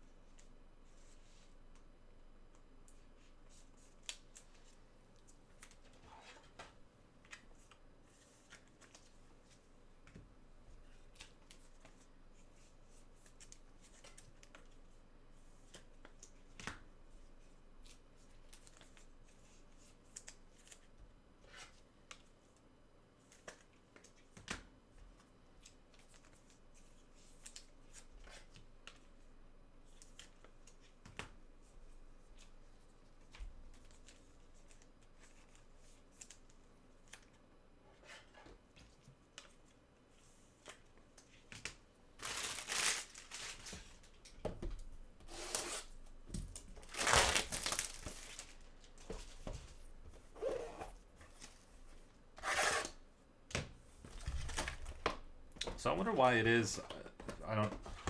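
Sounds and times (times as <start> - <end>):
trading cards sliding and rustling: 45.3 - 46.0.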